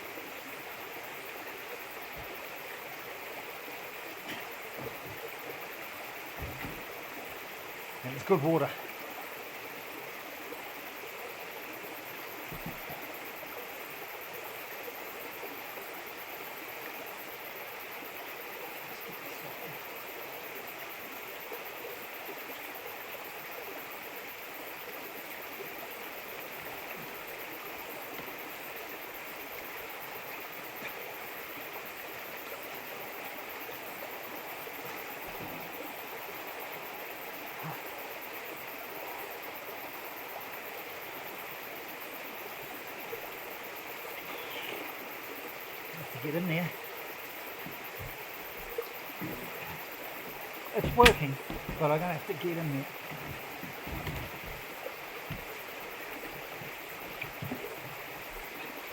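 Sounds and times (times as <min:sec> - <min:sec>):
running water flowing: 0:00.0 - 0:58.9
faint low knocks: 0:47.5 - 0:55.7.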